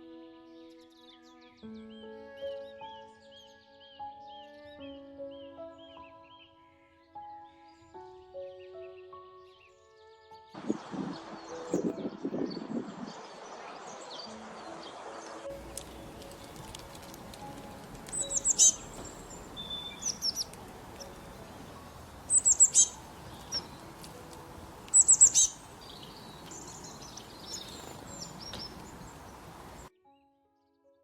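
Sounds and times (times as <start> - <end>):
small birds chirping: 15.5 - 29.9.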